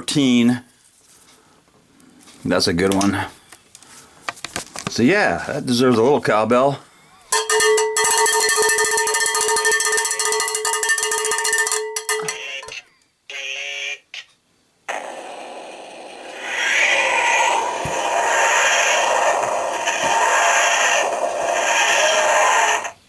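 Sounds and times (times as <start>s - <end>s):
cowbell struck rapidly: 7.3s - 12.4s.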